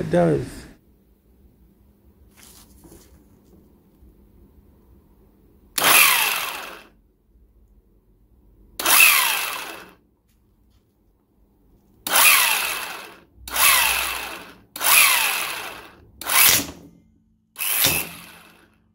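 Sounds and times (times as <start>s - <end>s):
impact wrench whining: 5.8s - 7.0s, 8.8s - 10.0s, 12.0s - 17.0s, 17.6s - 18.8s.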